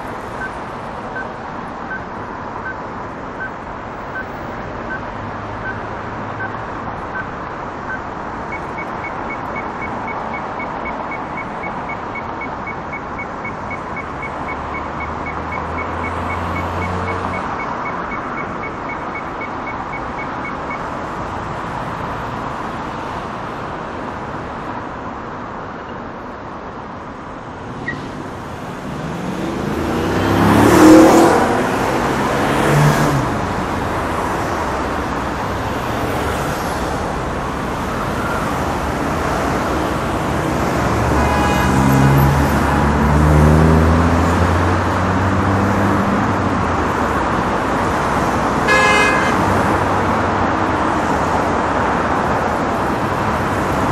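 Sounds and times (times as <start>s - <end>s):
heavy street traffic: 0.0s - 53.9s
vehicle passing close: 28.0s - 34.4s.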